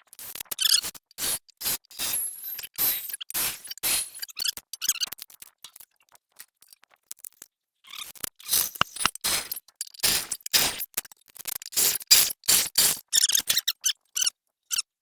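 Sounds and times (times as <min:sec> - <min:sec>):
metal scraping and clinking: 0:01.9 - 0:04.3.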